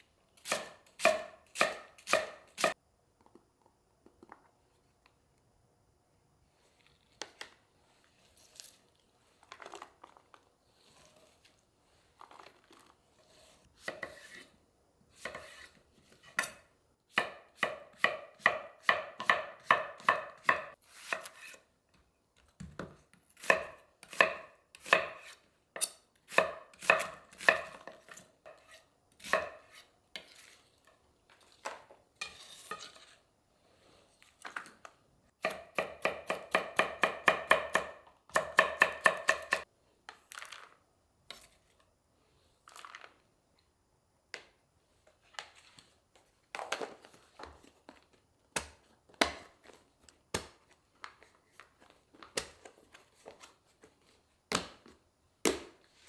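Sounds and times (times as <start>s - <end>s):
knife chopping on cutting board: 0.4s - 2.8s, 17.1s - 21.6s, 35.4s - 39.6s.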